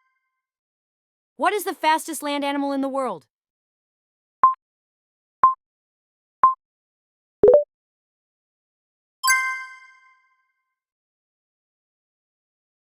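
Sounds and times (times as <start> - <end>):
short beeps: 7.4 - 7.6.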